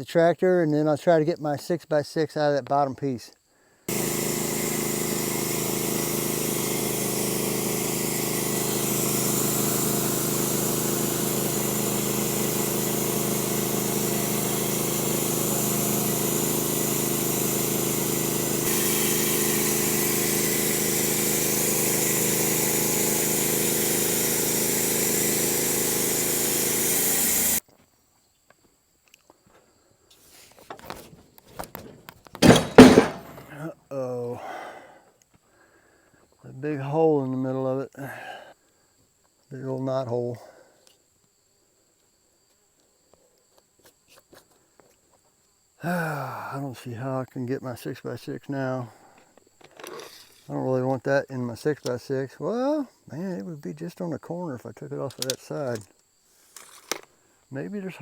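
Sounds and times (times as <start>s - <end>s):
bandsaw mill engine running: 3.9s - 27.6s, 31.7s - 33.5s
saw blade cutting wood hiss: 3.9s - 27.6s, 32.4s - 33.5s
knocks: 31.8s - 33.4s.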